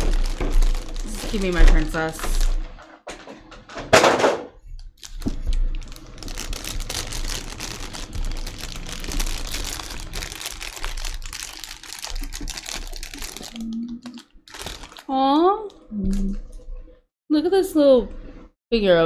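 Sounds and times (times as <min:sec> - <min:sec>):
plastic packaging crinkling: 0:00.0 - 0:03.0, 0:04.9 - 0:15.1.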